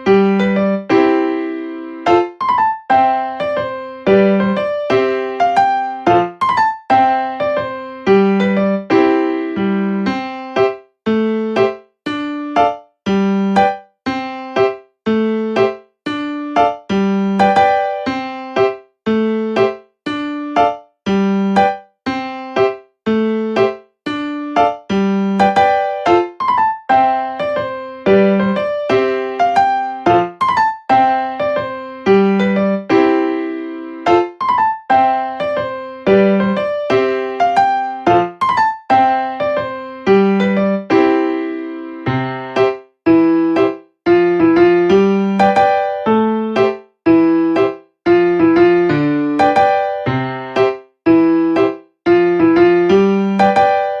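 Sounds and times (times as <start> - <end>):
electric piano tune: 0.0 - 54.0.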